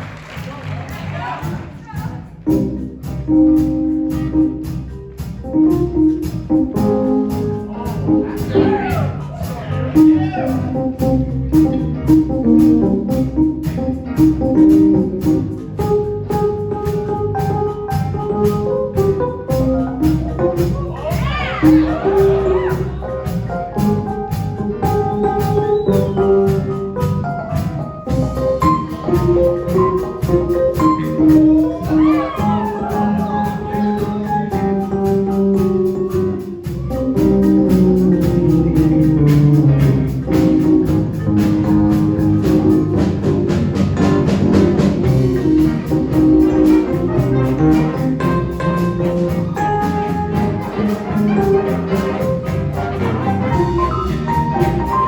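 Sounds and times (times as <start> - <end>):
jazz band playing: 0.0 - 55.0
saxophones: 44.0 - 55.0.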